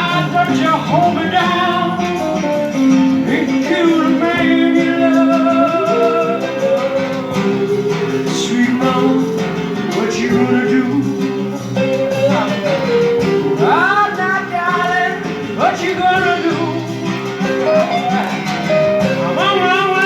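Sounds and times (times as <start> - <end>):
guitar: 0.0 - 20.0
man singing long held notes: 3.2 - 17.0, 19.2 - 20.0.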